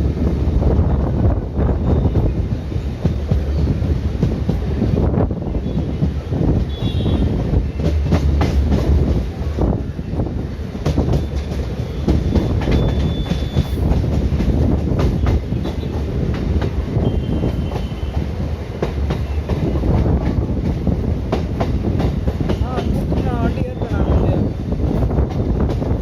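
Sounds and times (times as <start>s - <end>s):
train rumbling on track: 0.0s - 26.0s
wheels clacking over rail joints: 7.4s - 24.2s.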